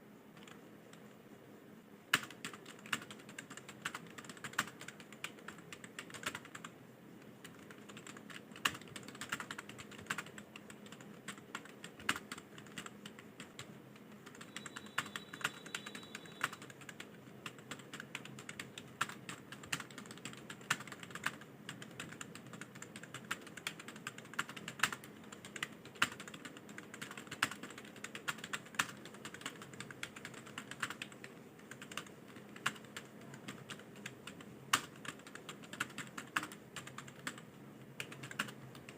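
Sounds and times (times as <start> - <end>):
fast keyboard typing: 0.4 - 0.6, 2.1 - 6.7, 7.3 - 38.9.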